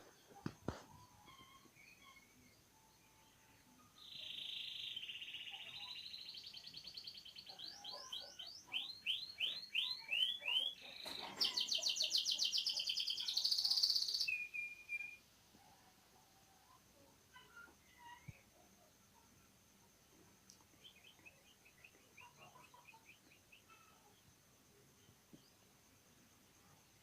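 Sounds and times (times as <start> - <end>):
canary singing: 4.0 - 15.2.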